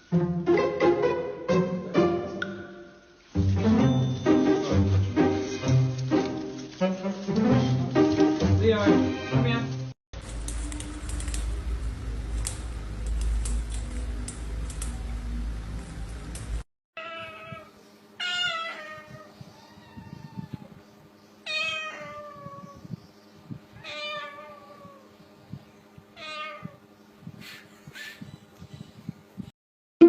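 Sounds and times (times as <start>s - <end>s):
loud rumbling noise: 10.2s - 16.6s
cat meowing: 17.0s - 20.8s, 21.4s - 22.9s, 23.8s - 25.1s, 26.1s - 26.8s.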